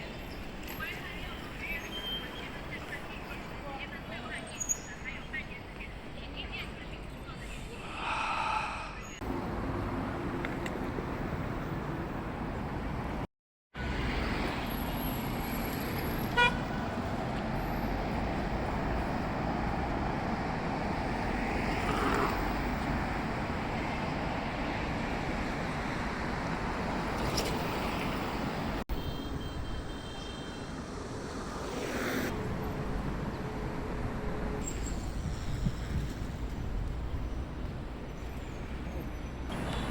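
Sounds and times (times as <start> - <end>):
rumble of passing cars: 8.0 - 39.9
car horn toot: 16.3 - 16.8.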